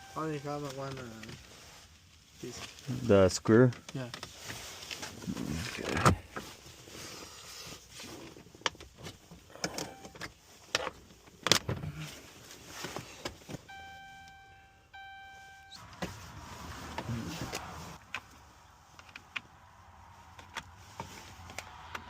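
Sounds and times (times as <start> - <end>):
long electronic beeps: 0.0 - 0.5, 13.7 - 15.8.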